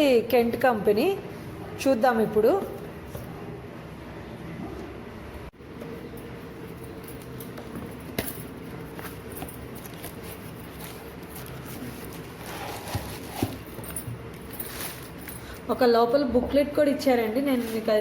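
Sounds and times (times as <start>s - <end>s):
steady background hum: 0.0s - 18.0s
packaging rustling and crinkling: 7.6s - 15.4s.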